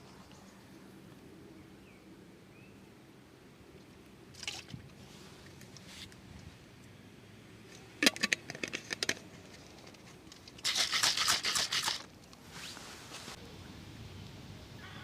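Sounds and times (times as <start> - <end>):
scraping or rustling: 8.1 - 13.4.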